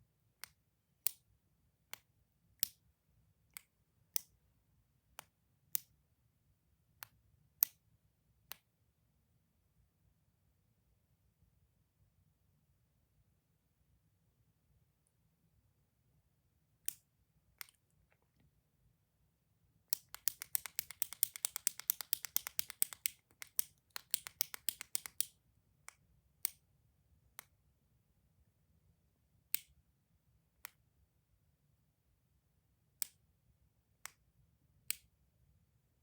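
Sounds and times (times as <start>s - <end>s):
toy clicking: 20.0s - 25.3s.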